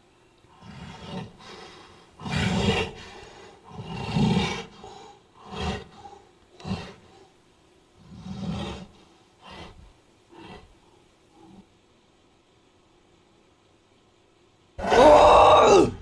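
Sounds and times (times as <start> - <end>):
deep creature roars: 14.8 - 16.0.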